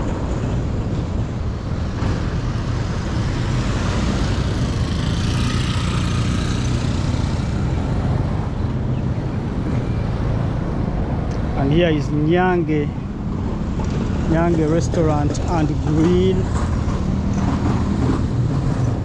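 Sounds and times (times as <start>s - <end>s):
road noise: 0.0s - 19.0s.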